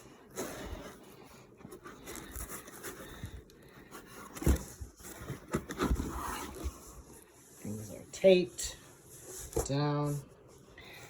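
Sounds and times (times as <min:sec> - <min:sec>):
packaging rustling and scraping: 0:00.0 - 0:08.1.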